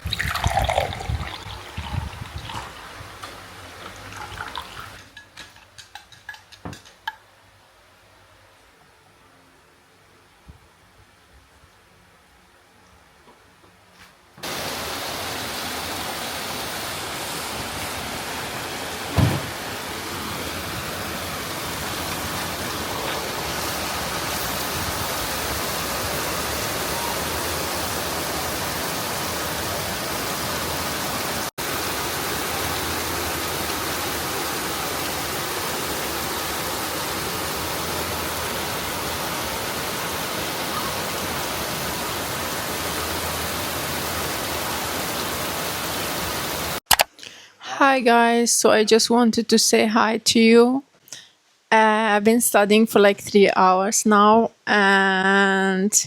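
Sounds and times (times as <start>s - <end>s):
steady rain hiss: 0.0s - 13.1s, 13.9s - 46.8s, 50.4s - 55.4s
low thump: 19.1s - 19.6s.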